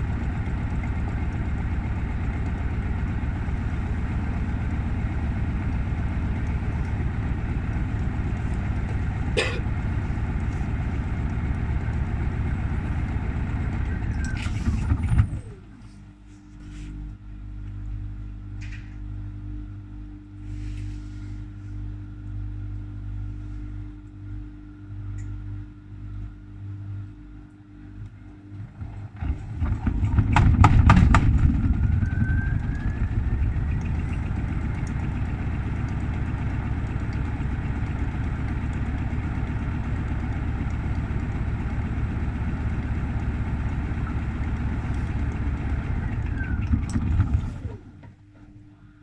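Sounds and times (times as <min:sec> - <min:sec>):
washing machine running: 0:00.0 - 0:49.0
knocking in drum: 0:29.6 - 0:31.8.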